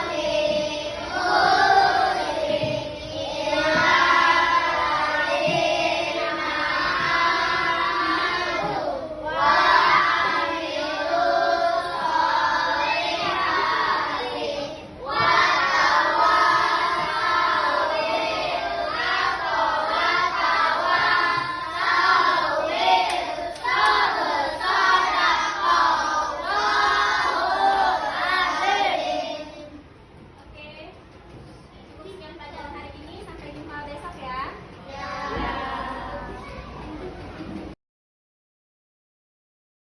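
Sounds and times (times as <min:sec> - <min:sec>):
children singing in unison: 0:00.0 - 0:29.8, 0:34.8 - 0:36.5.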